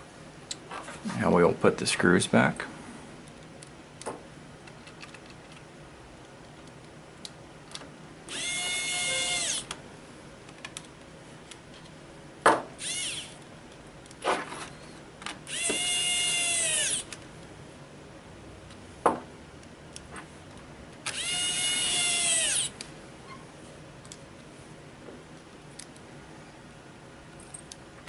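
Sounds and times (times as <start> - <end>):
electric screwdriver whine: 8.3 - 9.7, 12.8 - 13.4, 15.5 - 17.1, 21.1 - 22.7.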